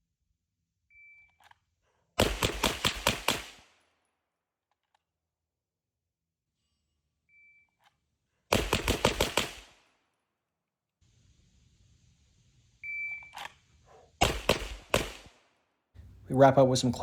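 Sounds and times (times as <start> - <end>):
pistol shots: 2.2 - 3.7, 8.5 - 9.8, 14.2 - 15.4.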